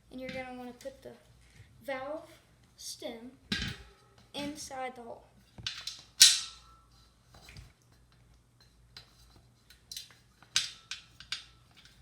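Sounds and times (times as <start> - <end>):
metal bicycle rim clanking: 5.7 - 6.9, 10.6 - 12.0.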